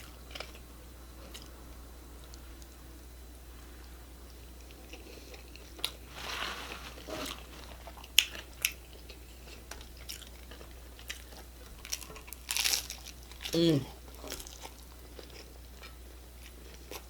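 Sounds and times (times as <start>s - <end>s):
person chewing: 4.6s - 17.0s
taco shell cracking: 7.8s - 13.5s.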